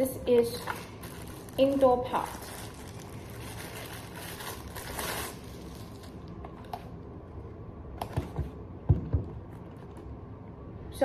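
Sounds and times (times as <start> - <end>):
packaging rustling: 0.3 - 6.9.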